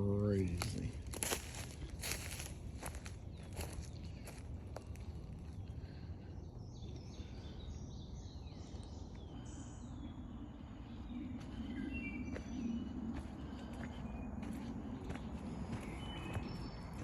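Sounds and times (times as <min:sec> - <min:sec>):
low background rumble: 0:00.0 - 0:17.0
songbirds chirping: 0:00.0 - 0:17.0.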